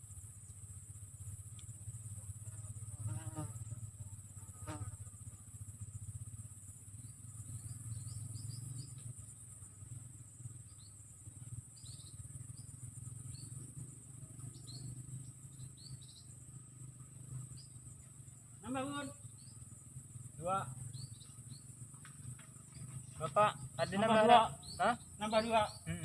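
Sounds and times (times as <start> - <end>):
crickets droning: 0.0 - 26.0
bird chirps: 6.9 - 9.5, 10.6 - 13.7, 14.4 - 26.0.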